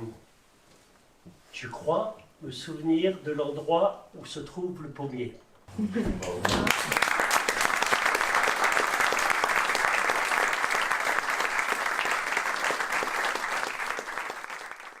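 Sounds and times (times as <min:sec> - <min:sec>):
audience applauding: 0:06.2 - 0:15.0.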